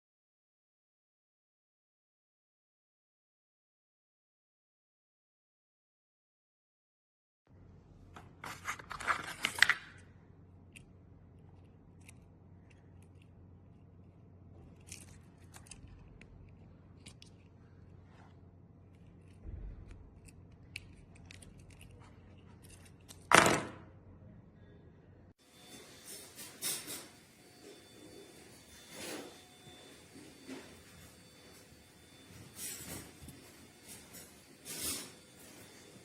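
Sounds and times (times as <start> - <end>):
low thump: 19.4 - 20.2.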